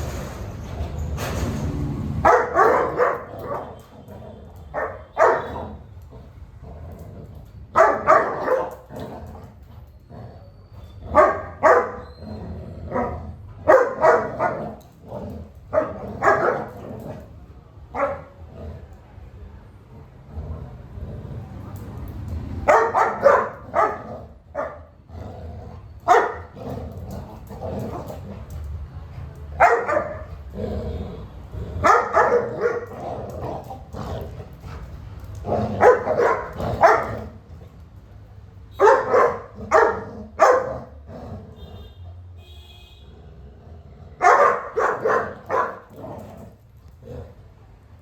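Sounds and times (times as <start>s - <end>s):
dogs barking: 2.2s - 4.0s, 4.6s - 5.9s, 7.7s - 9.1s, 11.1s - 14.9s, 15.5s - 17.2s, 17.9s - 18.4s, 22.6s - 24.9s, 26.0s - 28.3s, 29.5s - 30.5s, 31.8s - 37.5s, 38.8s - 41.1s, 44.2s - 46.2s.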